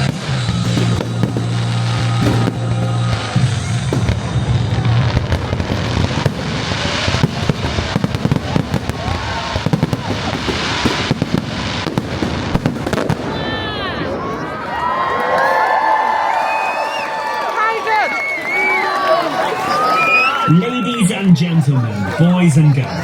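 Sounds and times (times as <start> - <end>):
music: 0.0 - 6.0
fireworks banging and crackling: 0.0 - 14.5
whistling fireworks: 0.0 - 14.6, 16.4 - 21.1.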